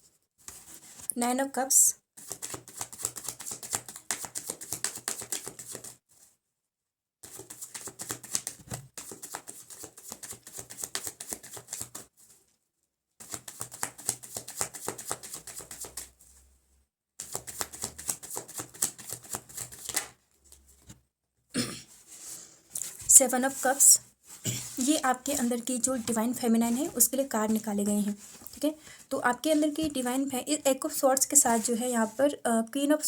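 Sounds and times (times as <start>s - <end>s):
cards being shuffled: 2.2s - 6.0s, 7.3s - 12.4s, 13.2s - 16.1s, 17.2s - 20.2s, 24.6s - 28.6s.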